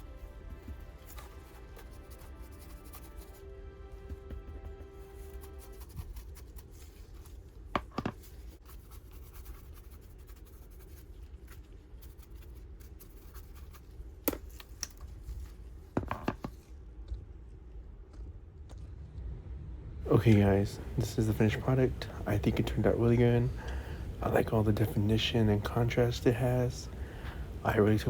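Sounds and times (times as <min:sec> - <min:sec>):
brush scratching over painted surface: 0:00.0 - 0:14.0.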